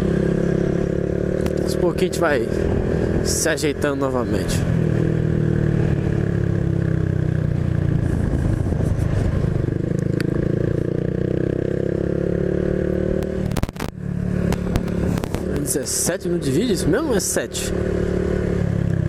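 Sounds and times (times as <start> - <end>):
motorcycle engine running: 0.0 - 19.0
wind rush: 7.7 - 10.4
sharp clicks: 13.2 - 15.6.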